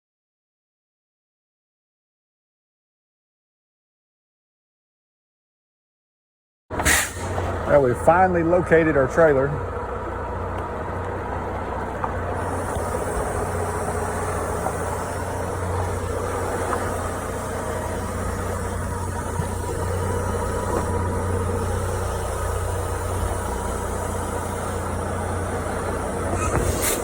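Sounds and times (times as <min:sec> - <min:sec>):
truck diesel engine running: 0:06.7 - 0:27.0
burst of hiss: 0:06.8 - 0:07.4, 0:26.2 - 0:27.0.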